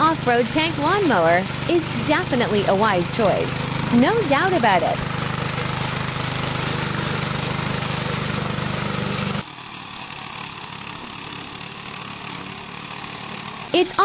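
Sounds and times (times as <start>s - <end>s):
lawnmower engine running: 0.0s - 9.4s
rough machine running: 0.1s - 9.4s.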